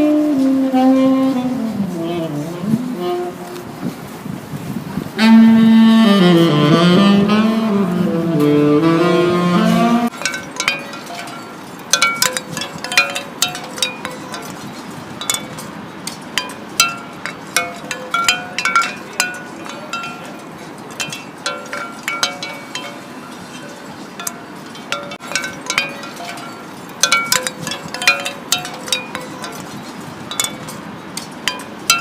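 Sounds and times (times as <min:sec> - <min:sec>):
metallic clinking and chiming: 0:10.1 - 0:32.0.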